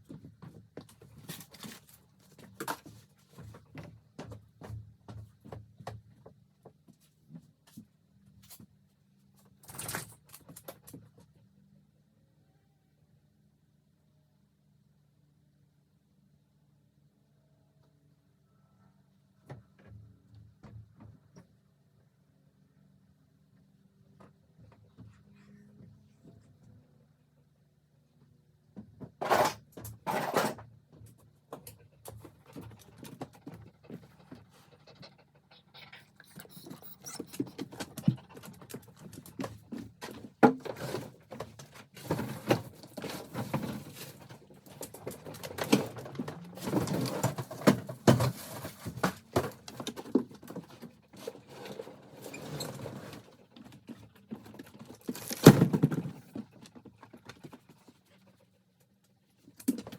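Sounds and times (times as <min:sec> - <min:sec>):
faint low hum: 0:07.8 - 0:29.2, 0:30.0 - 0:55.0.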